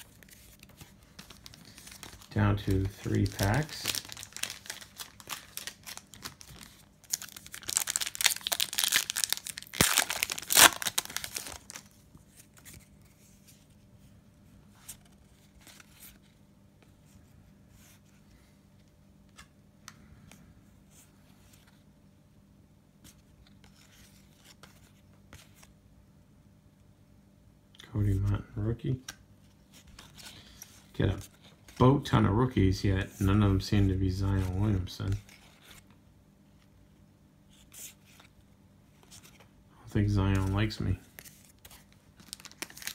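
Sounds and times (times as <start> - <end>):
cards being handled: 0.0 - 13.8, 14.8 - 16.4, 40.3 - 42.9
foil wrapper tearing and crinkling: 3.4 - 11.8, 42.2 - 42.9.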